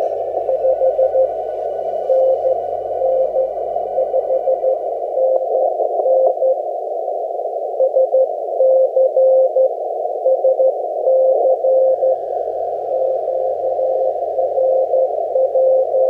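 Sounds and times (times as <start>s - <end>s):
morse code tone: 0.0s - 6.6s, 7.8s - 9.7s, 10.3s - 12.3s, 12.9s - 16.0s
radio band hiss: 0.0s - 16.0s.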